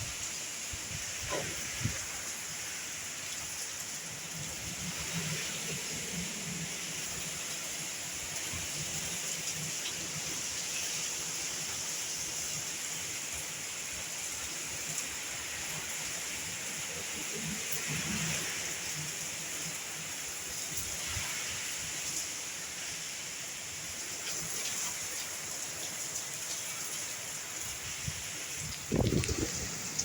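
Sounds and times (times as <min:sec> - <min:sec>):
steady heavy rain: 0:00.0 - 0:30.0
wind low rumble: 0:28.0 - 0:30.0.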